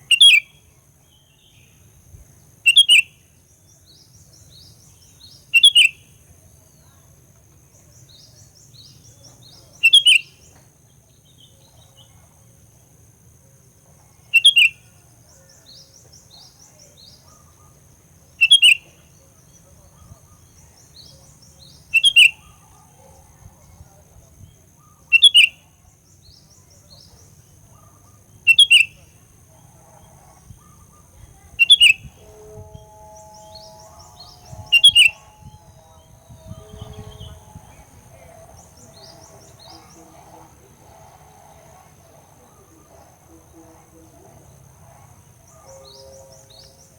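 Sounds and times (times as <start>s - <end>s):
faint bird twittering: 2.6s - 6.0s, 7.8s - 10.6s, 14.1s - 46.9s
faint steady high whine: 13.8s - 46.9s
bird calling loudly: 22.0s - 22.4s, 30.6s - 40.2s.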